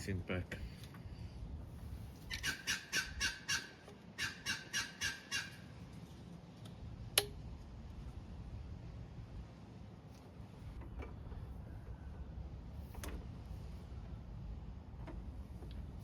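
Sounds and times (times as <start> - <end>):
bird calling repeated notes: 2.3 - 5.7.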